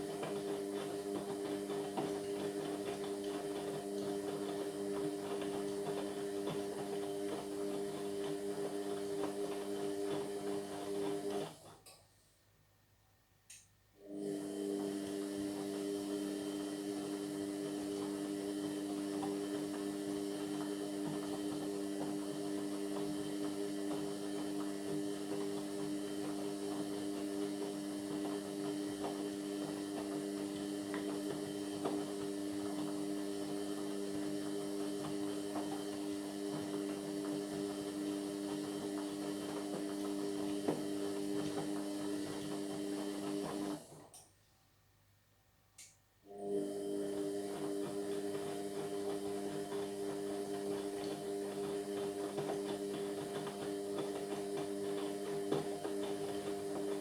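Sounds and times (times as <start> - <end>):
washing machine drain pump humming: 0.0 - 11.9, 14.0 - 44.2, 46.2 - 57.0.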